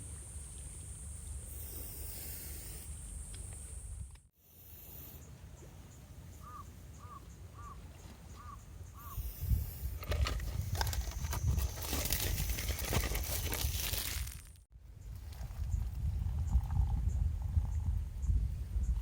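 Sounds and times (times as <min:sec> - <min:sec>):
crow cawing: 0:06.4 - 0:07.8
crunching and clicking noise: 0:10.0 - 0:14.6.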